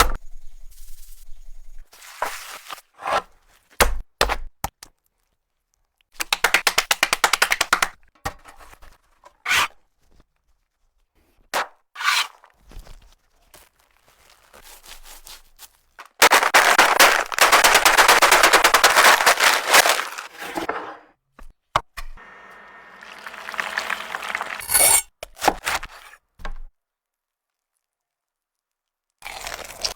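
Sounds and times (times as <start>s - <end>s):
chicken frying in hot oil: 22.2s - 24.7s, 29.2s - 29.9s.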